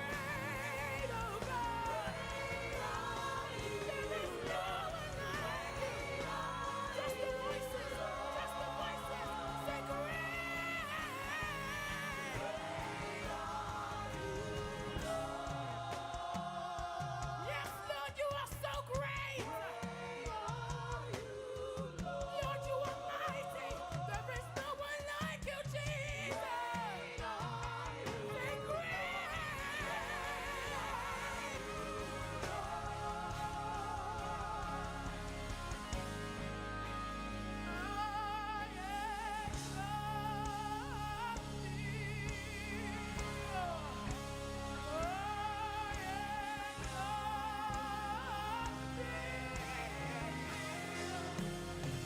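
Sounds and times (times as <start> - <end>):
keyboard chords: 0.0 - 16.2, 29.0 - 52.0
bass: 0.0 - 52.0
gospel worship music: 0.0 - 52.0
voices singing: 0.0 - 52.0.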